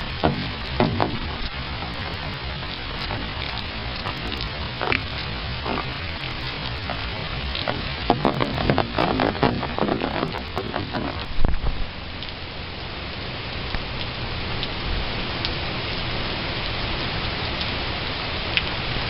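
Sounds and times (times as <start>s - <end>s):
sharp knocks and crackles: 0.0s - 11.8s
heavy rain pouring: 0.0s - 19.0s.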